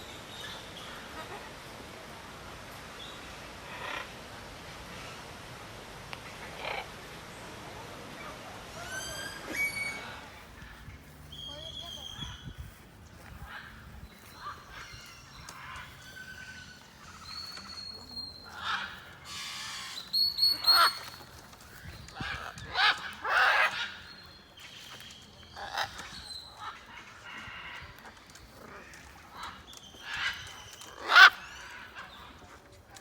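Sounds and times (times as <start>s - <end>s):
bird chirps and whistled calls: 19.3s - 21.2s.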